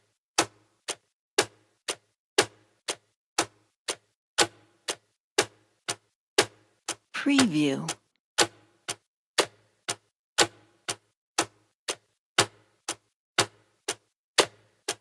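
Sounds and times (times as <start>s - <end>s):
clock ticking: 0.4s - 8.1s, 10.8s - 14.1s.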